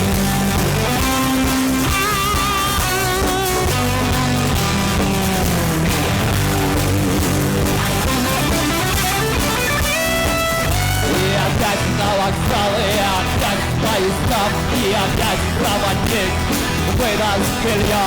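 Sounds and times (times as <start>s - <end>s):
lead guitar melody: 0.0s - 12.0s
bass: 0.0s - 18.0s
drums: 0.0s - 18.0s.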